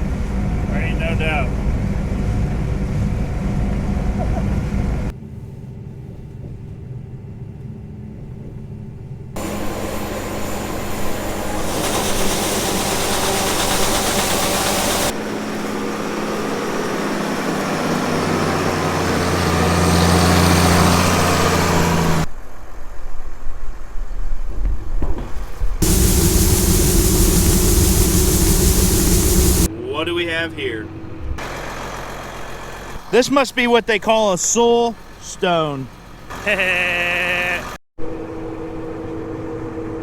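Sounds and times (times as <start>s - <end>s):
harvest machinery running: 9.4s - 15.1s, 25.8s - 29.7s
strong low hum: 25.8s - 29.7s.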